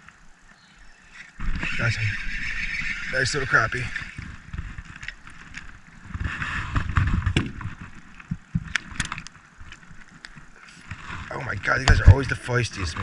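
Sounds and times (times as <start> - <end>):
rumbling handling noise in boat: 1.4 - 13.0
sharp clicks and knocks: 4.0 - 12.4.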